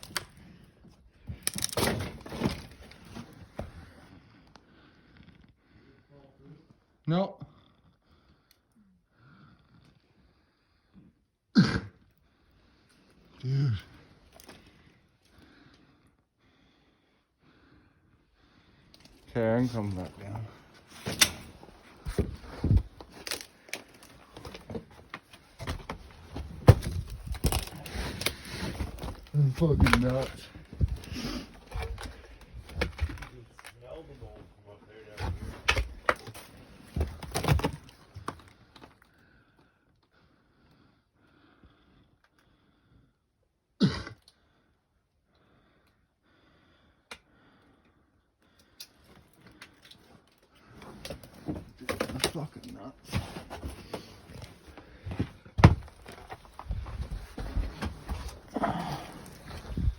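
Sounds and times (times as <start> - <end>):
debris crunching underfoot: 1.3 - 3.7, 20.8 - 33.7, 53.1 - 59.9
person coughing: 11.6 - 12.0, 43.8 - 44.3
footsteps on wooden floorboards: 53.2 - 58.6.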